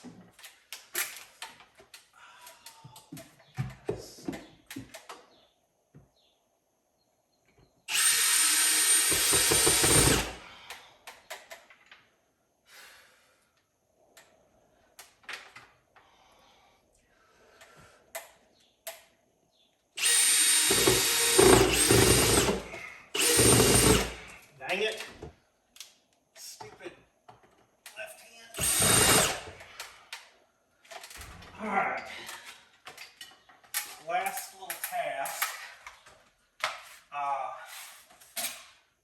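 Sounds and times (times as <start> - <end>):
power drill running: 7.9 - 10.4, 20.0 - 24.3, 28.6 - 29.6.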